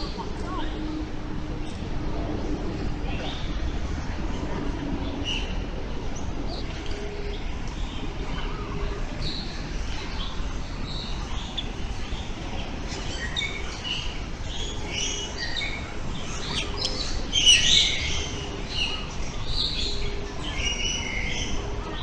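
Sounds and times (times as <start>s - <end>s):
low background rumble: 0.0s - 22.0s
birds chirping and whistling: 12.9s - 21.7s.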